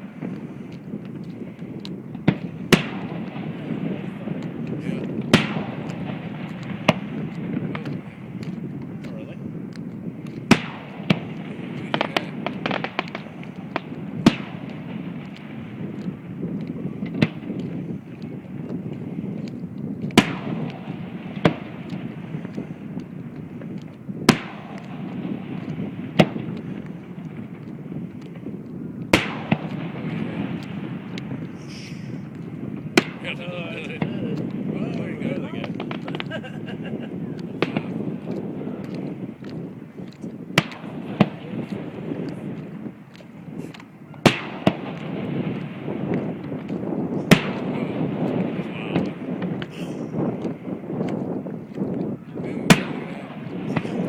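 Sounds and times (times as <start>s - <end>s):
fireworks bursting with sharp bangs: 0.0s - 54.0s.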